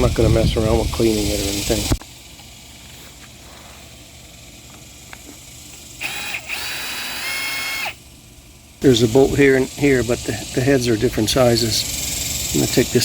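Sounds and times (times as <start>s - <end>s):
power drill motor whining: 5.7s - 8.0s.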